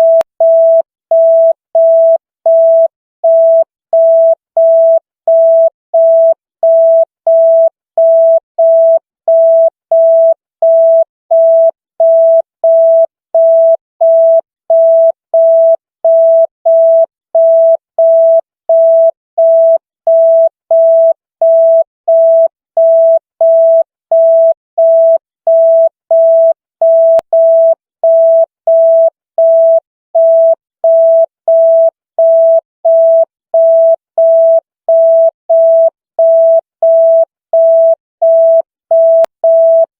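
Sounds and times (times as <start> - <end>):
busy signal beeping: 0.0 - 39.9.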